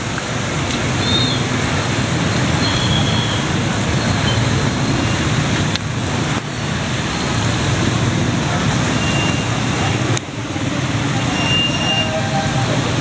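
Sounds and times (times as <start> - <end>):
road traffic passing: 0.0 - 13.0.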